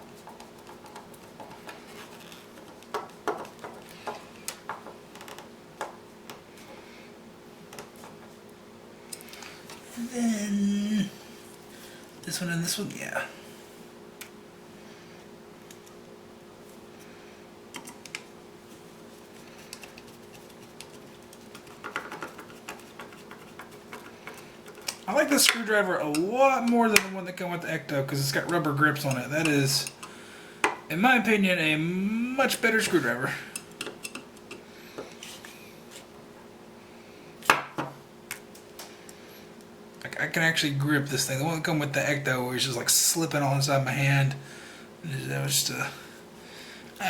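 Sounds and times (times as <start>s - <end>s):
faint steady hum: 0.0s - 47.0s
small parts clicking and tapping: 33.5s - 35.1s.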